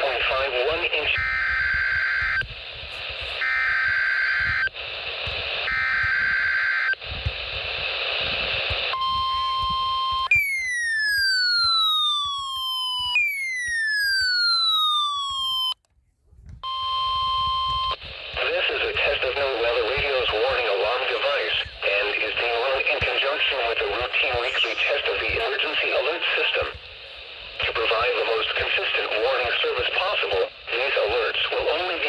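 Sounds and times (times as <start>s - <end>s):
radio hiss: 0.0s - 10.8s, 16.8s - 32.0s
short data bursts: 0.0s - 15.8s, 16.6s - 32.0s
steady alarm tone: 1.1s - 4.8s, 5.4s - 7.0s, 8.9s - 15.8s
falling electronic siren sweeps: 10.3s - 15.8s.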